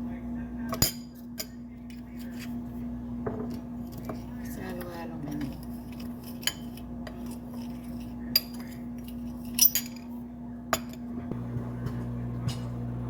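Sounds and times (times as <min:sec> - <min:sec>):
steady electrical hum: 0:00.0 - 0:13.0
utensils clinking against dishes: 0:00.7 - 0:11.2, 0:11.8 - 0:12.8
deeper hum: 0:11.2 - 0:13.0.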